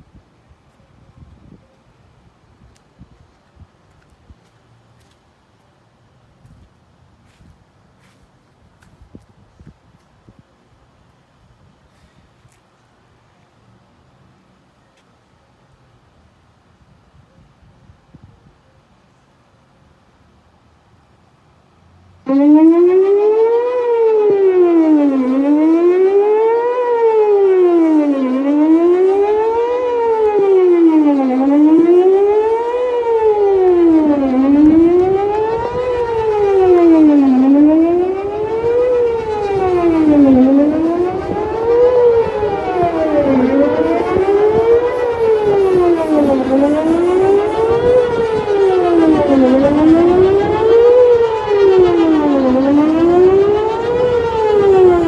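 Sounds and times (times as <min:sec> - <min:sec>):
warning siren wailing: 0:22.2 - 0:55.0.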